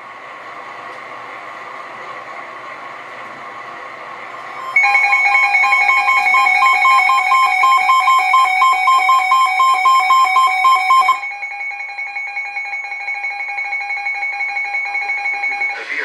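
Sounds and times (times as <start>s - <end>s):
steady alert tone: 4.5s - 16.0s
rapid alert beeps: 4.6s - 16.0s.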